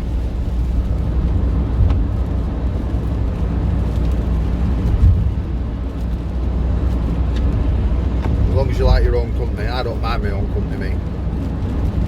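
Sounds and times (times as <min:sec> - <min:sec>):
road and engine rumble: 0:00.0 - 0:12.0.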